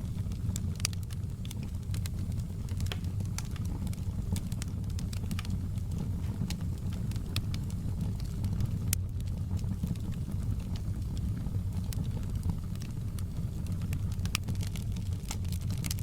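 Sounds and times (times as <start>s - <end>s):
flames rumbling: 0.0s - 16.0s
logs crackling and popping: 0.0s - 16.0s.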